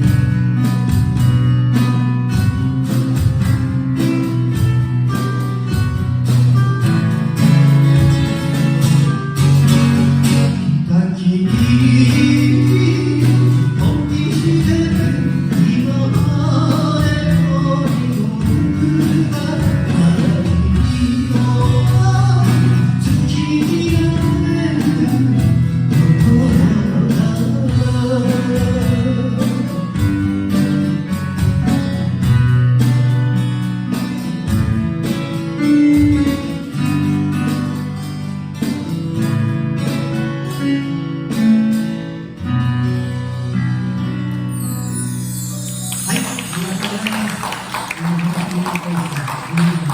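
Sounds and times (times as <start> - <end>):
strummed acoustic guitar: 0.0 - 49.9
person singing: 10.8 - 30.0, 45.9 - 49.9.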